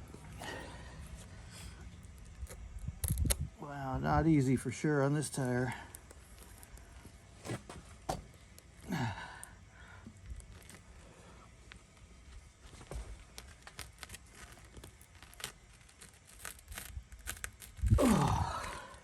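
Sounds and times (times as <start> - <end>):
person groaning: 8.8 - 9.5, 17.9 - 19.0.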